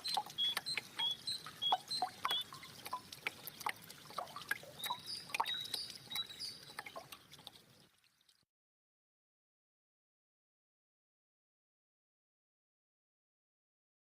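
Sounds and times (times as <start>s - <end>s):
water trickling and dripping: 0.0s - 8.5s.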